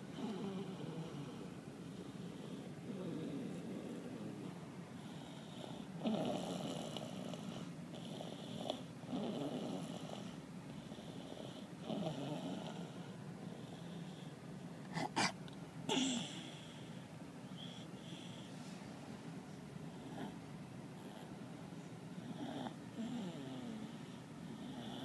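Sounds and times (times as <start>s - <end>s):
sharp snorts: 14.9s - 16.4s.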